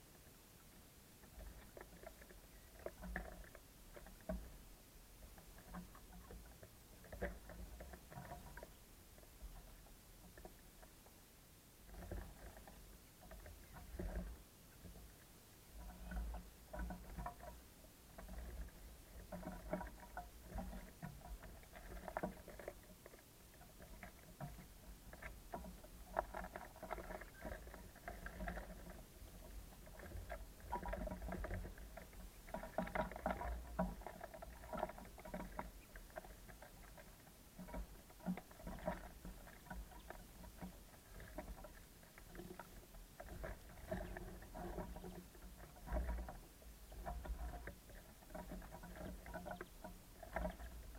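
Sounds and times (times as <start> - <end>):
birds pecking on wood: 11.9 - 50.9.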